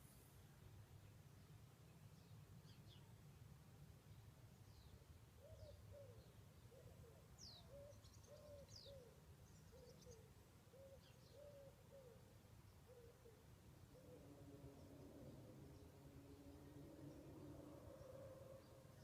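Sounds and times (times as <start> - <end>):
low hooting bird calls: 5.4 - 12.3, 12.9 - 19.0.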